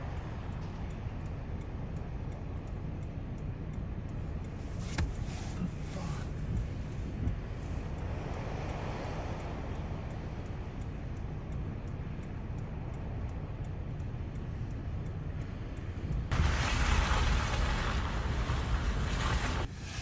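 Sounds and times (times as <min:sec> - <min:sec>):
car engine and tyre rumble: 0:00.0 - 0:20.0
road hiss: 0:04.5 - 0:10.3, 0:16.3 - 0:20.0.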